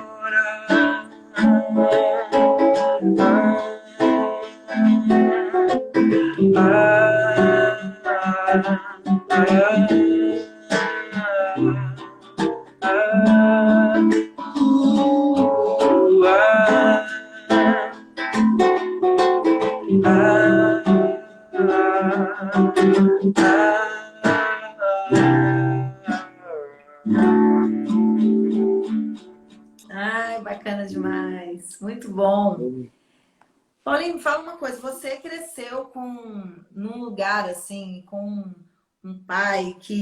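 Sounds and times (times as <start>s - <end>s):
acoustic guitar playing: 0.0s - 32.6s
person singing wordless melody: 0.0s - 32.9s.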